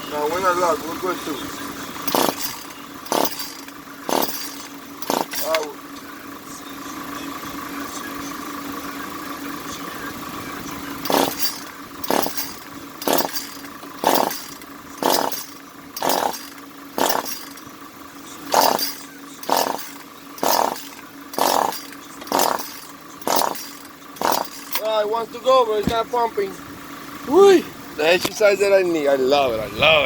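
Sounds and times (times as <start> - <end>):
chainsaw recoil cord pulls: 2.0 - 5.7, 11.0 - 17.8, 18.5 - 24.9.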